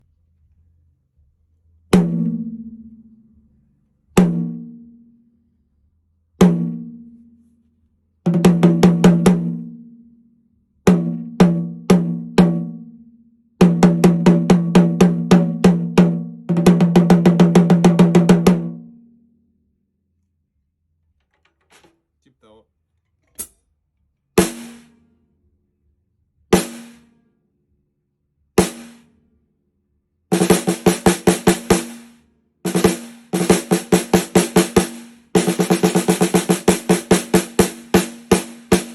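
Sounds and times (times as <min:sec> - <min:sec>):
snare drum struck with sticks: 0:24.4 - 0:24.9, 0:26.6 - 0:27.1, 0:28.6 - 0:29.0, 0:32.7 - 0:38.9.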